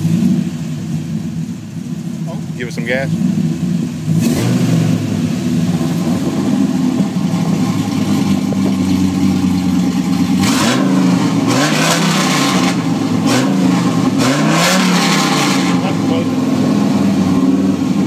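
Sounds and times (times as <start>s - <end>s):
engine idling and revving: 0.0s - 18.0s.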